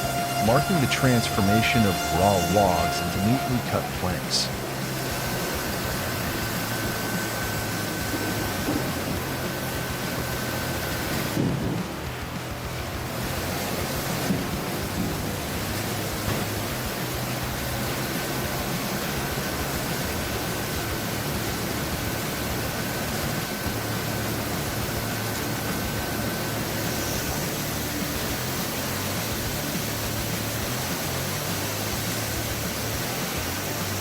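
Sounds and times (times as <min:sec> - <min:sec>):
faint high whine: 0:00.0 - 0:11.4
sawmill machinery rushing: 0:00.0 - 0:34.0.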